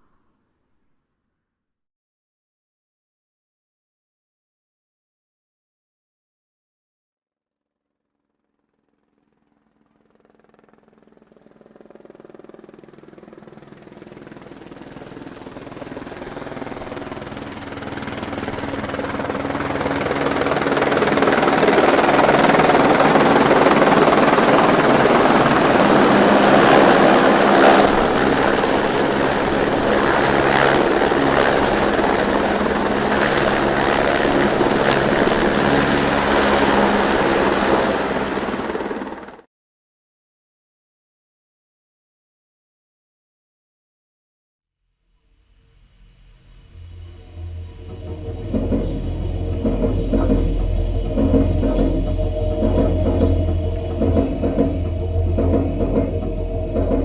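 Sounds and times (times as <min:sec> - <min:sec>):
helicopter: 0:08.5 - 0:39.5, 0:46.8 - 0:57.0.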